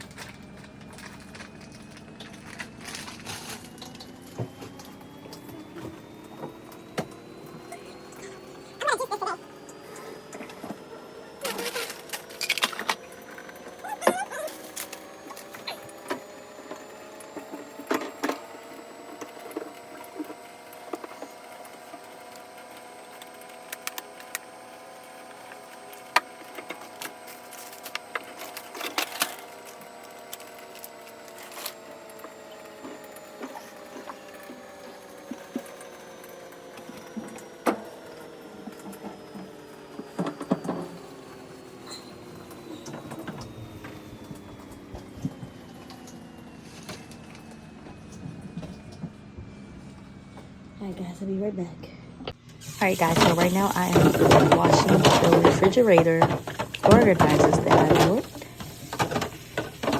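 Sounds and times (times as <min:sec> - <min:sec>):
humming drone: 0:00.0 - 0:59.9
containers being handled: 0:52.8 - 0:59.9.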